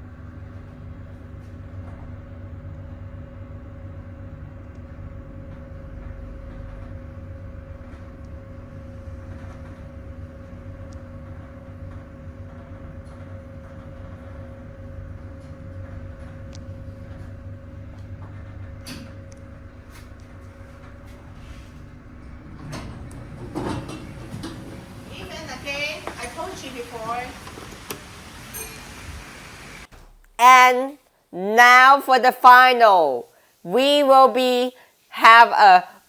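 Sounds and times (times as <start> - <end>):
elevator running: 4.5 - 30.8.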